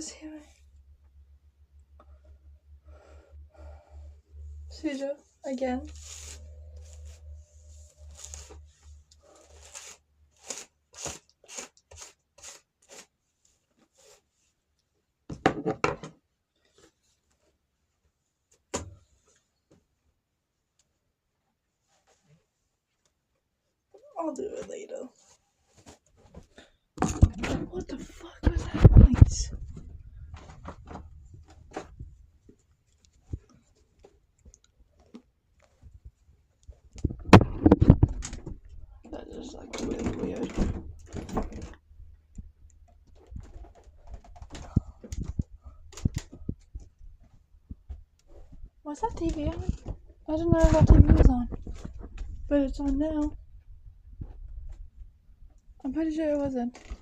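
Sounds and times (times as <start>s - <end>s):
low hum: 0.1s - 9.6s
rustling: 2.9s - 14.8s.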